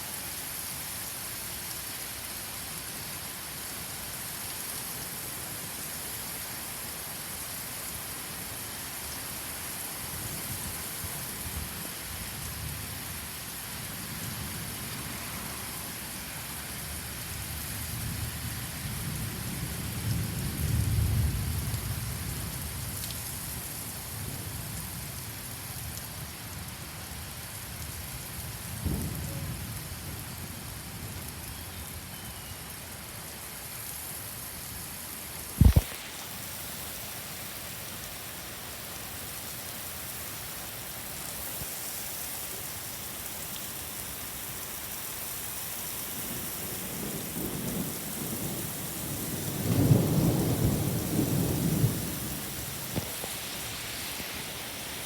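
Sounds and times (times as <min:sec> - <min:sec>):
steady rain: 0:00.0 - 0:55.0
loud thump: 0:35.6 - 0:35.9
thunder rolling: 0:47.4 - 0:53.4.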